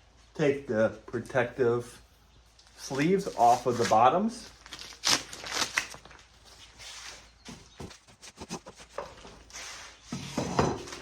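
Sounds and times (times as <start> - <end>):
plastic sleeves rustling and crinkling: 2.5 - 10.1.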